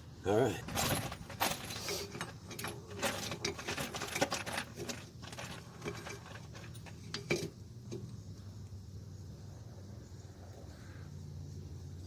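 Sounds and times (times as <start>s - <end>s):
metal parts clinking and rattling: 0.5s - 7.6s.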